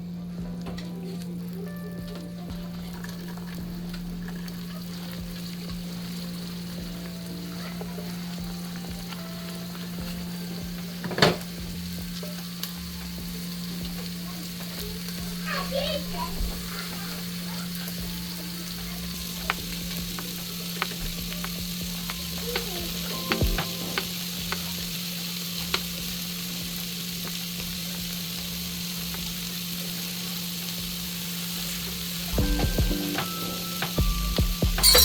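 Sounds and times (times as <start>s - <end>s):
food sizzling in a pot: 0.0s - 35.0s
utensil clatter: 34.8s - 35.0s.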